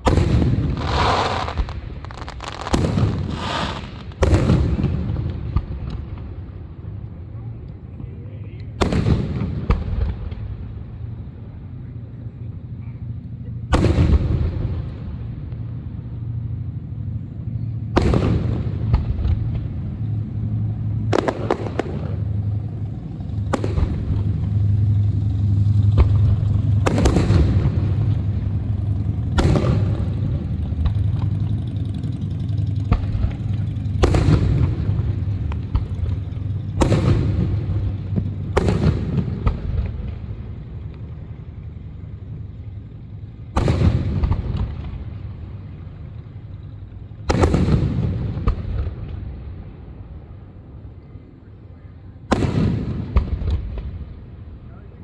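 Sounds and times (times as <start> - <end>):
fireworks crackle: 0.0 - 6.6, 18.0 - 41.4
fireworks bangs: 0.0 - 7.0, 8.8 - 11.2, 13.7 - 16.0, 17.4 - 41.2, 42.6 - 50.3, 52.2 - 55.0
low rumble: 0.0 - 55.0.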